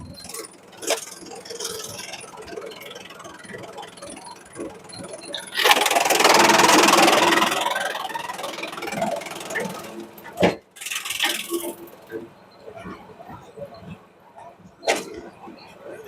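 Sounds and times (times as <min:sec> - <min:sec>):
shredder machine noise: 0:00.0 - 0:12.3.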